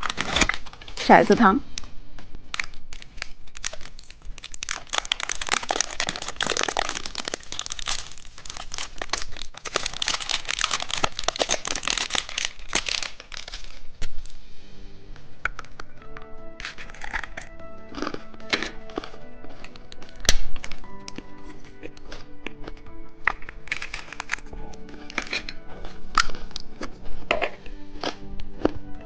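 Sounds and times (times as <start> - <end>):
candy wrapper crinkling and tearing: 0.0 - 1.0, 1.7 - 14.4, 15.4 - 28.8
music: 0.0 - 3.7, 13.9 - 29.0.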